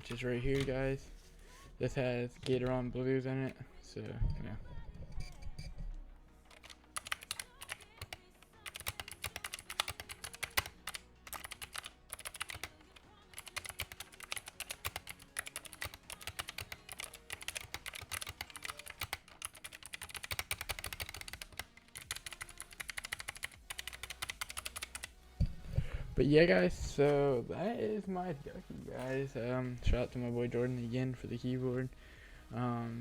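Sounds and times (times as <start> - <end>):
clicky mechanical keyboard typing: 6.5 - 25.1.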